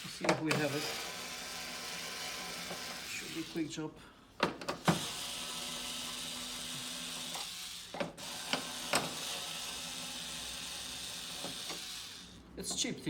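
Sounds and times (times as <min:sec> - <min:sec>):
electric screwdriver running: 0:00.0 - 0:03.6, 0:04.8 - 0:12.4.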